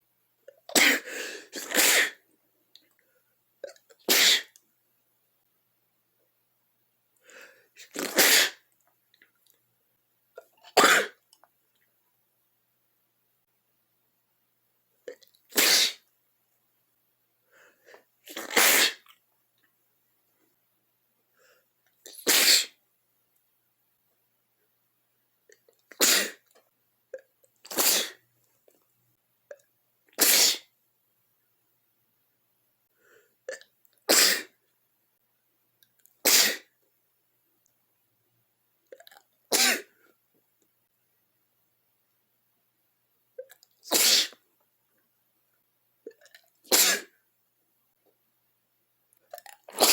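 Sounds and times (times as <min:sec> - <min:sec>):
person sneezing: 0:00.7 - 0:02.2, 0:04.0 - 0:04.6, 0:07.8 - 0:08.6, 0:10.6 - 0:11.2, 0:15.5 - 0:16.0, 0:18.3 - 0:19.1, 0:22.1 - 0:22.8, 0:26.0 - 0:26.5, 0:27.7 - 0:28.2, 0:30.2 - 0:30.7, 0:34.1 - 0:34.6, 0:36.2 - 0:36.7, 0:39.5 - 0:40.1, 0:43.8 - 0:44.4, 0:46.7 - 0:47.2.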